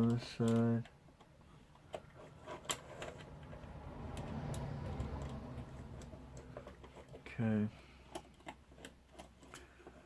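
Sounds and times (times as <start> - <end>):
small clicks and taps of tools: 0.0 - 2.1.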